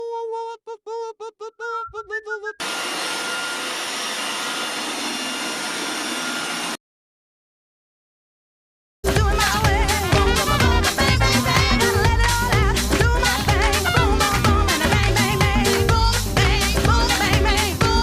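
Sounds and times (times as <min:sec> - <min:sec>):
robot vacuum running: 0:02.6 - 0:06.8.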